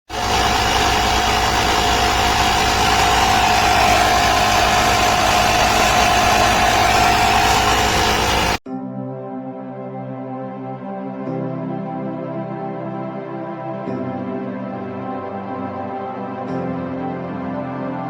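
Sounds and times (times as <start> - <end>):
tyre inflator pump whining: 0.1 - 8.6.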